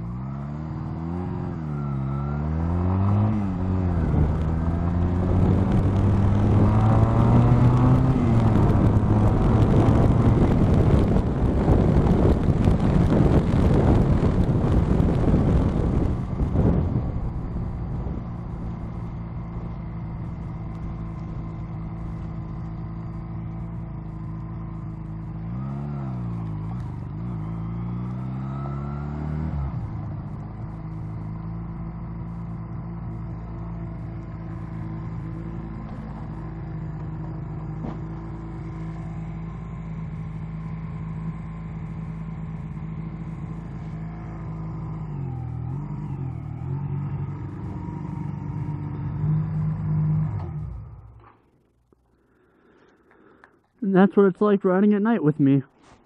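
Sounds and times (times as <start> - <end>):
motorcycle engine revving: 0.0 - 53.8
heavy wind noise: 3.4 - 20.4
motorcycle engine idling: 16.8 - 25.4.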